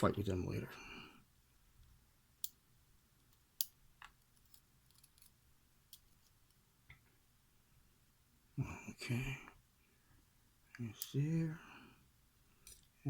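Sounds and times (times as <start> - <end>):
small metal parts clicking: 3.6 - 6.4.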